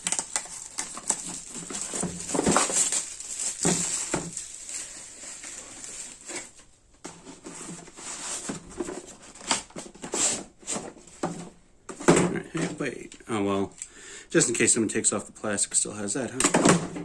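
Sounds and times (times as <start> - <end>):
packaging rustling and crinkling: 0.0 - 10.9.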